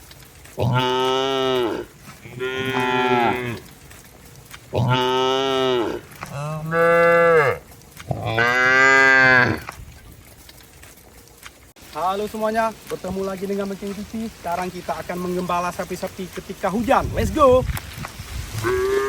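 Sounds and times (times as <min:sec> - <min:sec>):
cattle mooing: 0:00.6 - 0:03.7, 0:04.7 - 0:09.7, 0:18.6 - 0:19.0.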